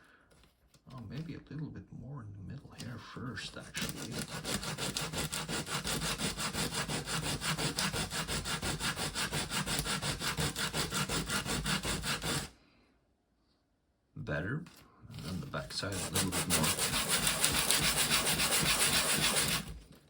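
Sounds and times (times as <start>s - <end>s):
plastic part rubbed on sandpaper: 3.8s - 12.5s, 15.2s - 19.8s.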